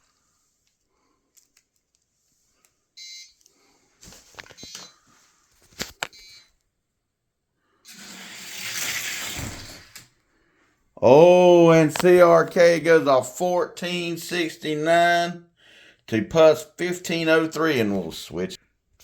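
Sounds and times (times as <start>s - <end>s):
toy car wheels rumbling on track: 7.9s - 10.0s.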